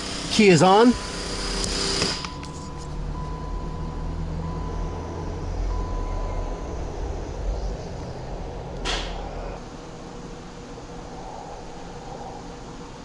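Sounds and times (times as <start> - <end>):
low mechanical rumble: 0.0 - 13.0.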